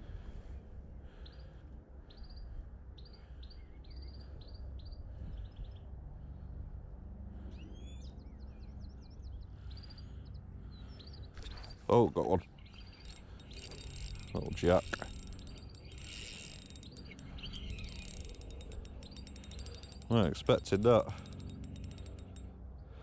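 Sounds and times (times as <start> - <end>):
small birds chirping: 10.9 - 22.4.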